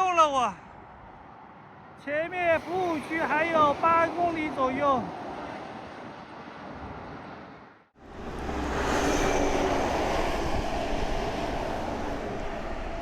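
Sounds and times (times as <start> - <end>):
vehicle rumble with faint whine: 8.0 - 13.0.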